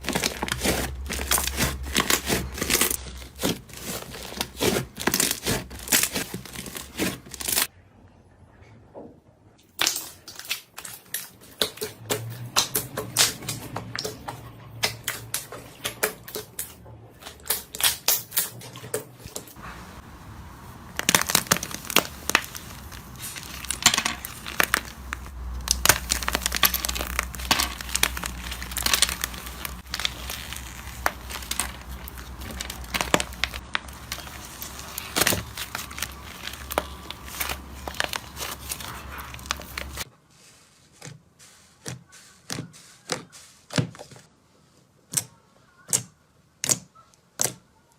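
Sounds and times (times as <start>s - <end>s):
slime crackling and popping: 0.0s - 7.7s, 19.7s - 40.1s.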